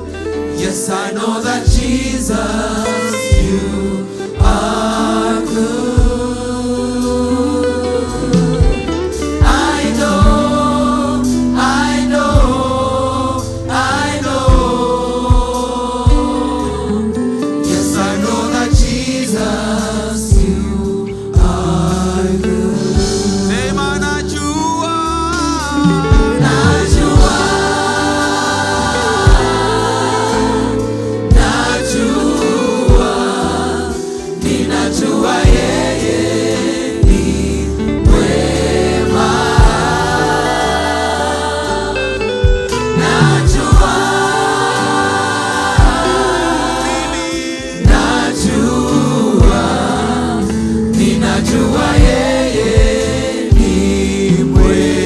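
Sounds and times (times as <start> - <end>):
choir singing with band: 0.0 - 55.0
sharp drum hits: 25.9 - 28.4.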